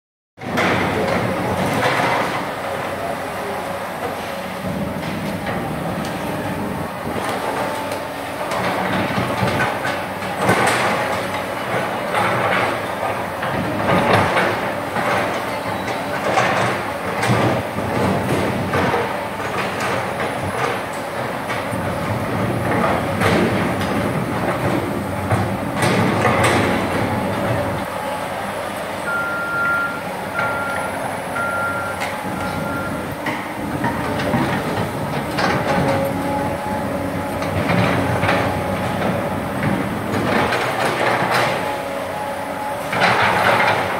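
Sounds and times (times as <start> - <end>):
excavator bucket clanking: 0.4 - 3.0, 4.1 - 43.9
diesel engine under load: 0.4 - 43.9
alarm beeps: 29.1 - 33.1.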